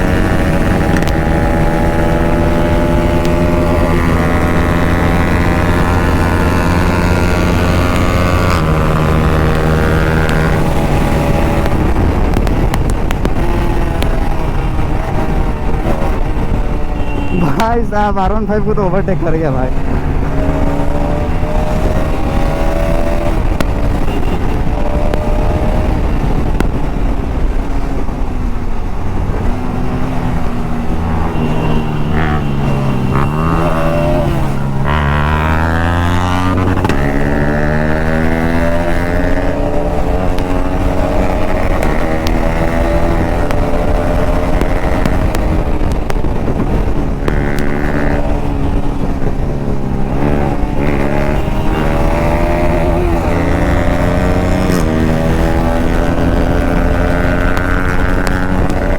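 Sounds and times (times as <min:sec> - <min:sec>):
motorcycle engine revving: 0:00.0 - 0:58.9.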